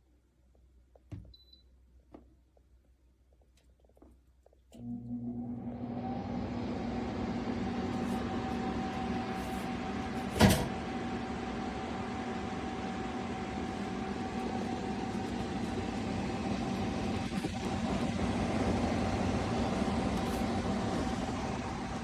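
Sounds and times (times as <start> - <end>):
air conditioner running: 4.9 - 22.0.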